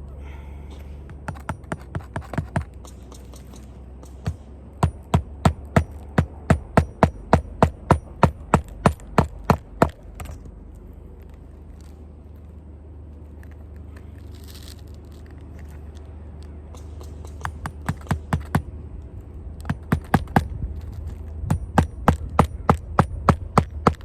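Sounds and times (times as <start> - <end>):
hammer striking nails: 1.0 - 10.4, 16.8 - 18.7, 19.6 - 20.6, 21.4 - 24.0.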